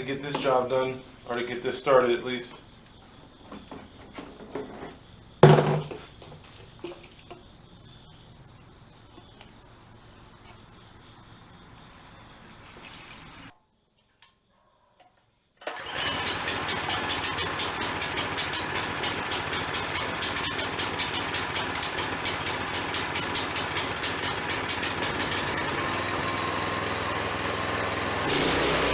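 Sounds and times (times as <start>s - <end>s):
small gasoline engine running: 15.7s - 28.9s.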